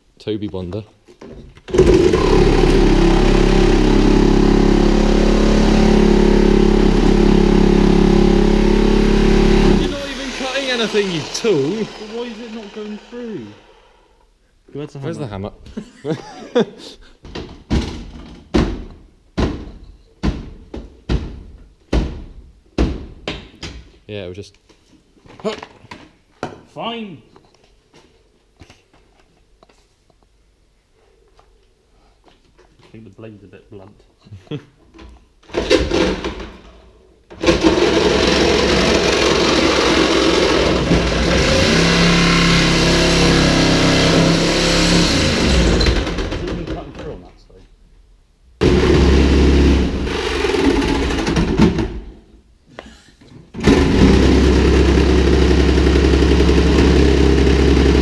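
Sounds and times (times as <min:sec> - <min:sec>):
electric tool cutting sheet metal: 0:01.7 - 0:14.0, 0:37.4 - 0:46.2, 0:48.6 - 0:51.3, 0:53.6 - 0:58.0.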